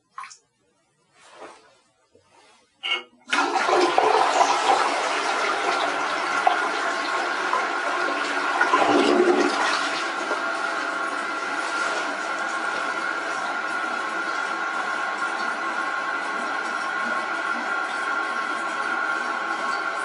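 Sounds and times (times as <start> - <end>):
toilet water rushing: 3.2 - 20.0.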